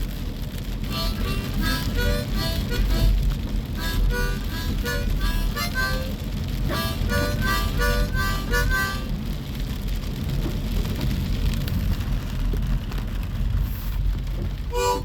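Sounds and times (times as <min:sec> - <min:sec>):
low rumble and hiss: 0:00.0 - 0:15.0
harmonica chords: 0:00.9 - 0:09.1, 0:14.7 - 0:15.0.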